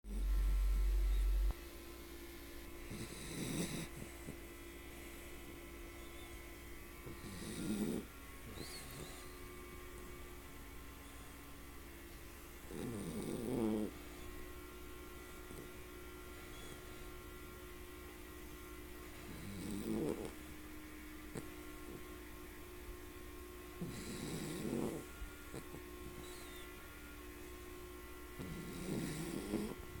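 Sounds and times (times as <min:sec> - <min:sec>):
dog snoring: 0:00.0 - 0:01.6, 0:02.8 - 0:06.4, 0:07.0 - 0:10.2, 0:12.6 - 0:14.5, 0:15.2 - 0:17.0, 0:19.1 - 0:20.5, 0:21.3 - 0:22.2, 0:23.7 - 0:26.8, 0:28.3 - 0:30.0
loud low hum: 0:00.0 - 0:02.8
faint steady hum: 0:00.1 - 0:30.0.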